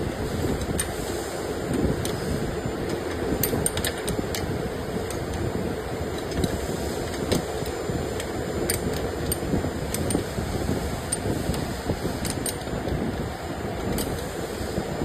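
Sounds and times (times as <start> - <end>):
steady mechanical hum: 0.0 - 15.0
sharp clicks and ticks: 2.8 - 5.5, 6.2 - 10.3, 11.0 - 13.0, 13.8 - 14.3.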